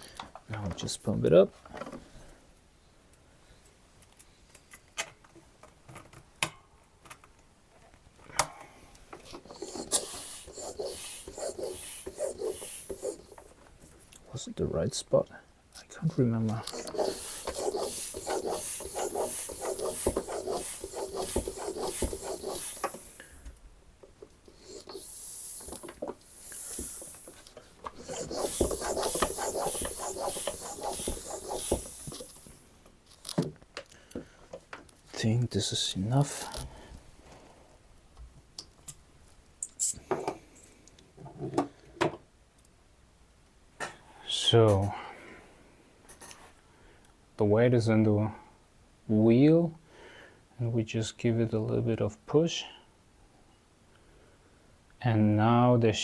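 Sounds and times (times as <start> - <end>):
bicycle pump hissing strokes: 9.3 - 14.0, 16.6 - 23.6, 24.4 - 32.8.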